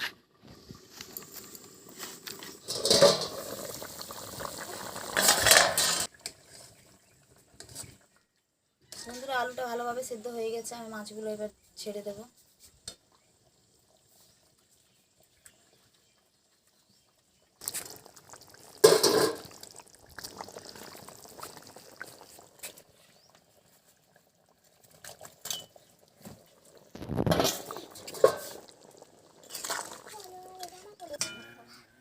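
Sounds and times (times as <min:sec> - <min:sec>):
curry bubbling and dripping: 0:00.4 - 0:31.4
fish splashing into curry: 0:17.6 - 0:22.8, 0:25.0 - 0:30.8.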